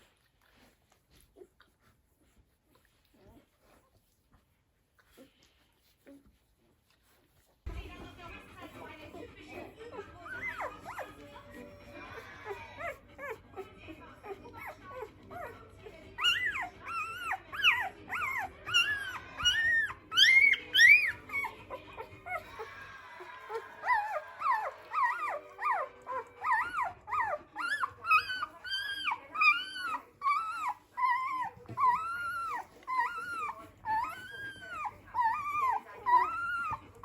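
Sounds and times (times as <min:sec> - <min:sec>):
puppies squeaking and whimpering: 0:08.5 - 0:37.0.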